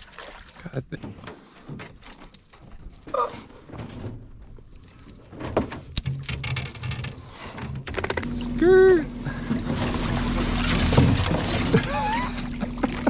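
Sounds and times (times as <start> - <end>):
gear knocking in a boat: 1.0 - 13.0.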